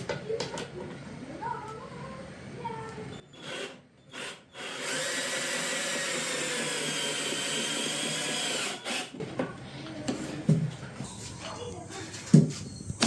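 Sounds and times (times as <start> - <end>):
cordless drill driving screw into wood: 3.4 - 9.2.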